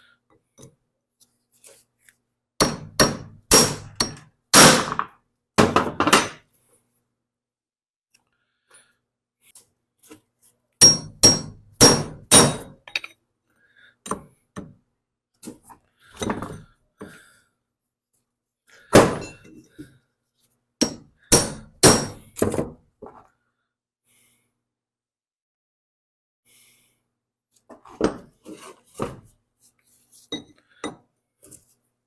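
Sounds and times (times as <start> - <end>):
hammer striking metal: 2.6 - 5.0, 10.8 - 12.8, 20.8 - 22.2.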